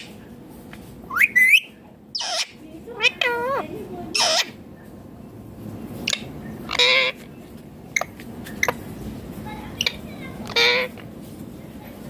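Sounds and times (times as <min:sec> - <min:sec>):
parakeet wavering call: 0:01.1 - 0:04.6, 0:06.1 - 0:07.2
parakeet chirping: 0:01.1 - 0:04.7, 0:06.0 - 0:07.3, 0:07.9 - 0:08.8, 0:09.7 - 0:11.0.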